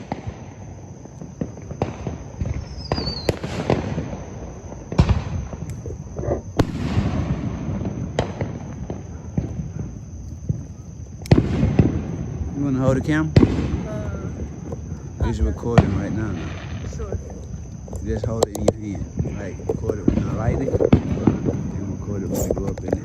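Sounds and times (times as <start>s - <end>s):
fireworks bangs and pops: 0.0s - 23.0s
falling firework whistle: 1.4s - 4.2s.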